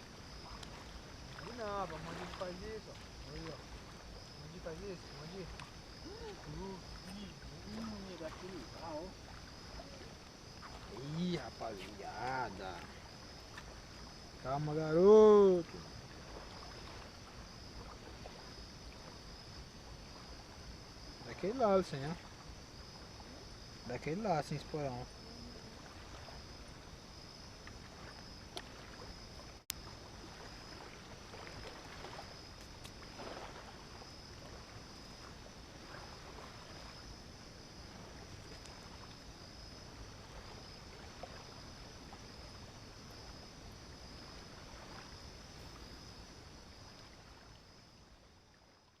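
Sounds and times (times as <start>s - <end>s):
water wash: 0.0s - 13.4s
crickets trilling: 0.0s - 49.0s.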